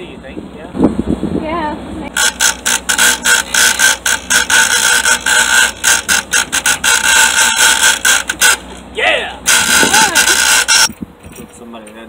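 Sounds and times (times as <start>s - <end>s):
power tool whining in bursts: 2.1s - 11.0s.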